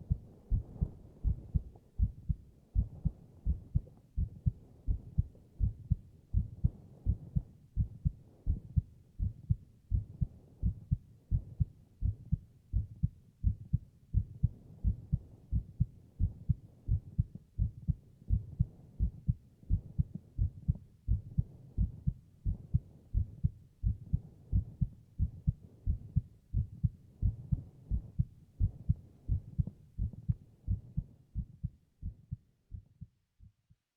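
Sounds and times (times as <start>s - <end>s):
heartbeat thumps: 0.0s - 33.8s.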